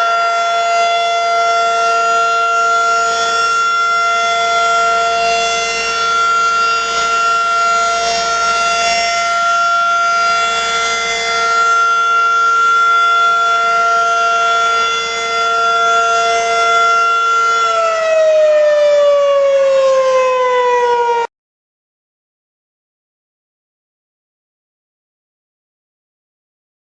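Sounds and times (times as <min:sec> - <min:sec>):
two-tone warning siren: 0:00.0 - 0:21.3.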